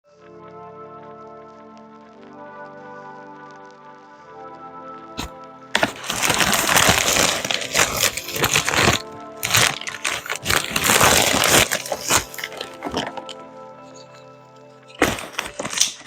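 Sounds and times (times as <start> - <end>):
packaging crackling and crinkling: 5.2 - 16.0.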